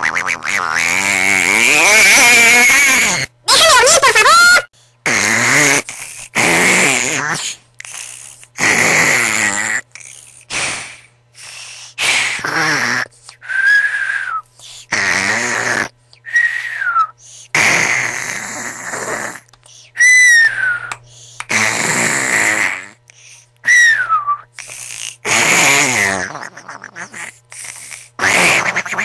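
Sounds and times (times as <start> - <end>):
rattling snores: 5.1 - 11.0, 14.9 - 16.0, 17.5 - 19.5, 21.5 - 23.0, 24.6 - 29.0.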